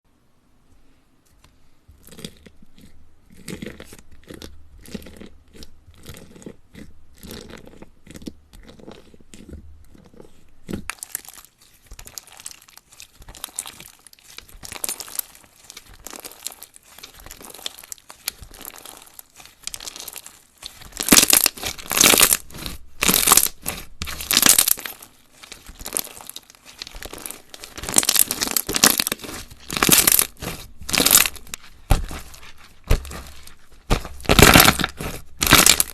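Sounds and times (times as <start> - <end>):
slime crackling and popping: 10.7 - 35.9.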